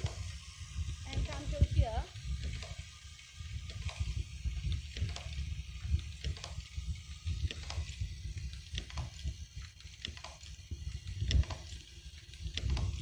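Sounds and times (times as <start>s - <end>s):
machine rumbling: 0.0s - 13.0s
mechanical clicks and rattles: 0.0s - 13.0s.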